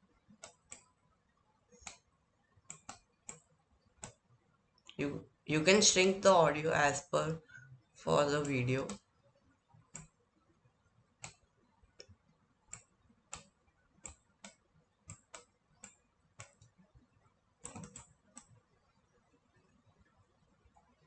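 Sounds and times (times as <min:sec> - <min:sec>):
computer mouse clicks: 0:00.4 - 0:01.0, 0:01.7 - 0:02.1, 0:02.7 - 0:04.2, 0:09.9 - 0:10.2, 0:11.2 - 0:16.8, 0:17.6 - 0:18.6.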